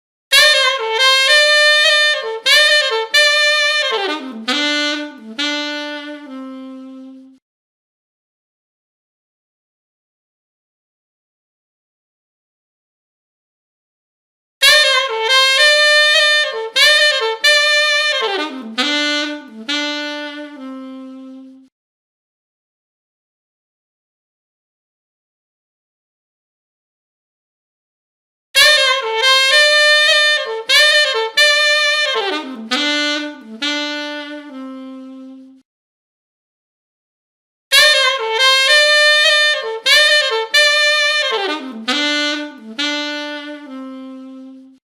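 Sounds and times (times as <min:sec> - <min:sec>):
solo saxophone melody: 0:00.3 - 0:07.4, 0:14.6 - 0:21.7, 0:28.6 - 0:35.6, 0:37.7 - 0:44.8.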